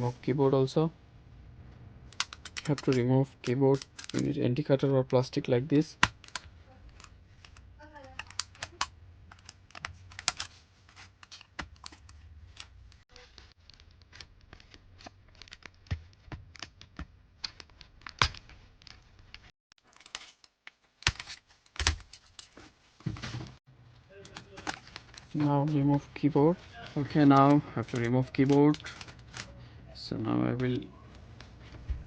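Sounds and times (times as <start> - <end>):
plastic clicks and snaps: 2.1 - 4.3, 6.0 - 10.5.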